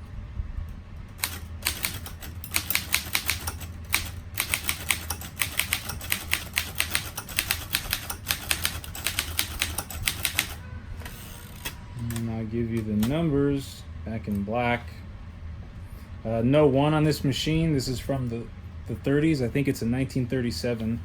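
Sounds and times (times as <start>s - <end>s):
typewriter typebar strikes: 1.2s - 10.6s.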